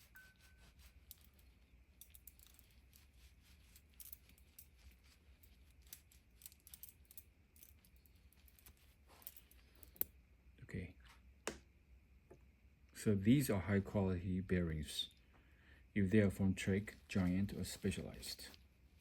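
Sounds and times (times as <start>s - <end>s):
small metal parts clicking: 0.0s - 10.1s.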